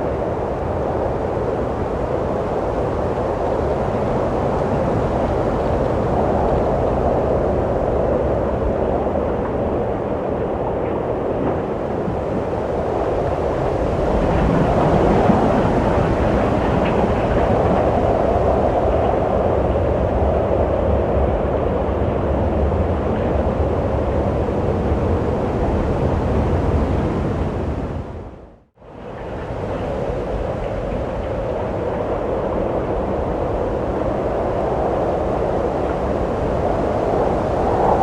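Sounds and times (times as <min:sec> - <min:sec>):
wind rushing: 0:32.2 - 0:38.0.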